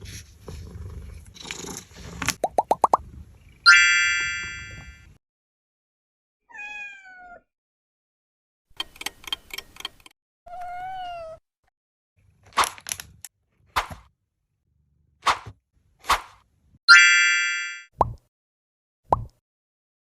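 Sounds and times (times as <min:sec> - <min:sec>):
cat meowing: 0:06.5 - 0:07.5, 0:10.5 - 0:11.4.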